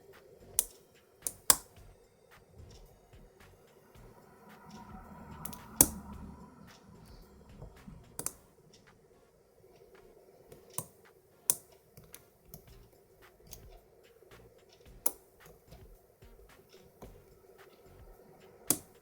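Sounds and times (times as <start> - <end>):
lock pick clicks: 0.5 - 1.8, 18.7 - 19.0.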